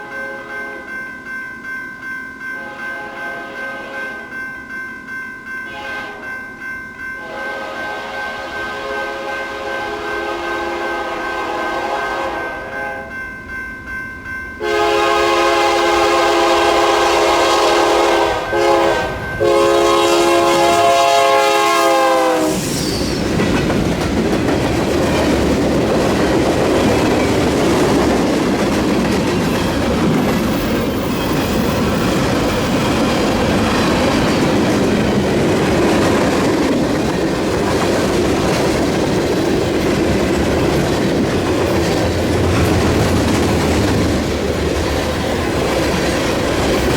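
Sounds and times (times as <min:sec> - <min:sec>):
train rumble and wheel clatter: 0:00.0 - 0:46.9
locomotive horn blasts: 0:02.6 - 0:04.1, 0:05.7 - 0:06.3, 0:07.2 - 0:13.1, 0:14.6 - 0:22.6.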